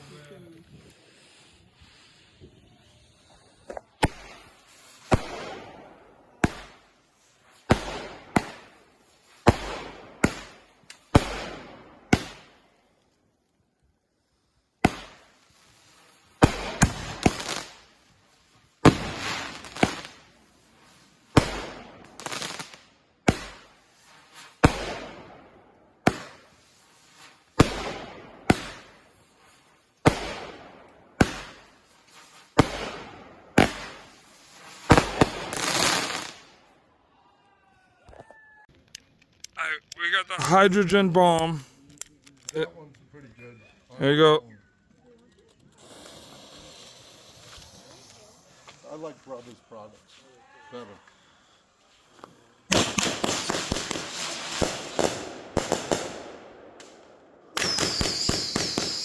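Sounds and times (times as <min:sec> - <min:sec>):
fireworks exploding: 0:02.4 - 0:06.8, 0:07.6 - 0:08.8, 0:14.8 - 0:18.0, 0:18.8 - 0:20.3, 0:21.3 - 0:36.8, 0:45.5 - 0:49.4, 0:52.7 - 0:59.0.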